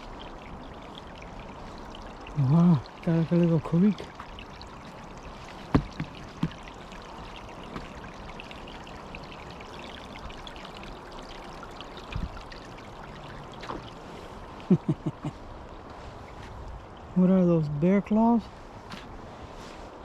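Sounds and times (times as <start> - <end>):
creek water running: 0.0 - 20.0
low thumps: 5.7 - 6.7.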